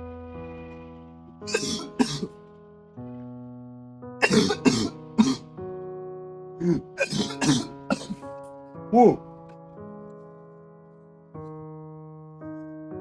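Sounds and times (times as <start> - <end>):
person coughing harshly: 1.5 - 2.3, 4.2 - 5.4, 6.6 - 8.2.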